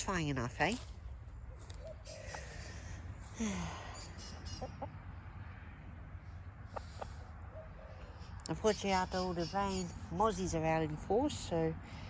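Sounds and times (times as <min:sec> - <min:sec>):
chicken clucking: 0:04.3 - 0:05.0.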